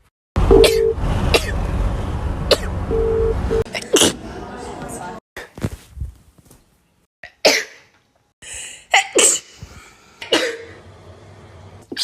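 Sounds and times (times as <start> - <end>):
sharp human sneezes: 8.9 - 9.6.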